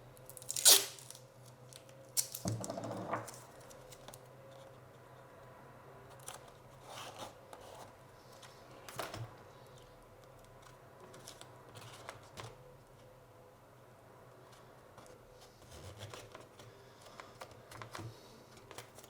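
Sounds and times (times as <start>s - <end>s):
tape clicks and rustles: 0.2s - 4.3s, 15.0s - 19.0s.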